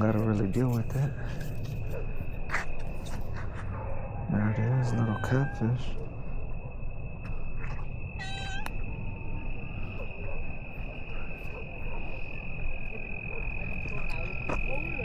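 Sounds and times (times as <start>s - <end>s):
crickets chirring: 0.0s - 15.0s
cat meowing: 4.8s - 5.8s, 7.6s - 8.7s.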